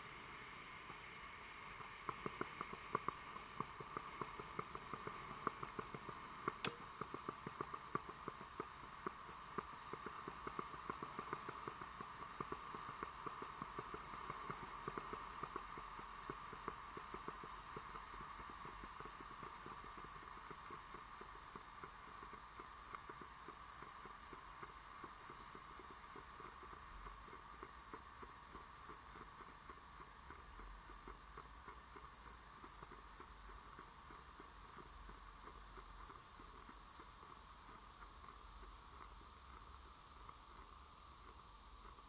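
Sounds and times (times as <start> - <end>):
crackle of small pops: 0.0 - 42.0
sharp click: 6.6 - 6.9.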